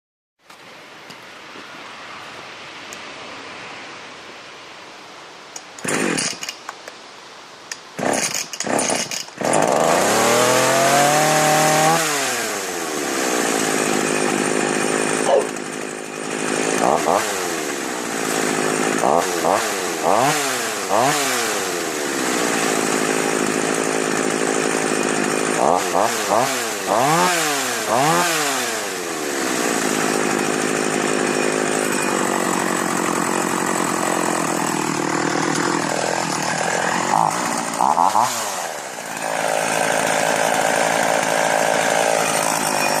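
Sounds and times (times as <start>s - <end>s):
chainsaw starting and revving: 5.6s - 6.6s, 7.7s - 43.0s.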